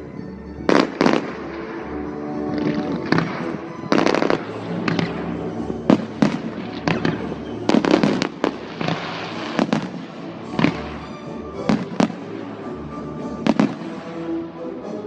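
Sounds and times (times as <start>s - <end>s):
music playing: 0.0s - 15.0s
fireworks bangs: 0.7s - 1.9s, 2.5s - 12.7s, 13.4s - 14.4s
fireworks crackle: 0.7s - 12.4s, 13.4s - 14.3s.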